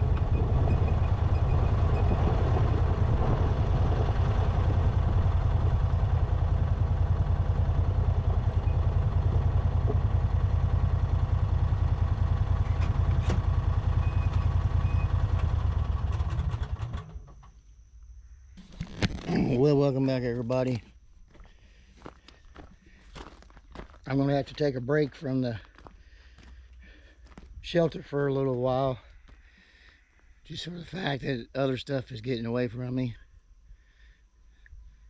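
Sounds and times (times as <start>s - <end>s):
engine idling: 0.0s - 20.8s.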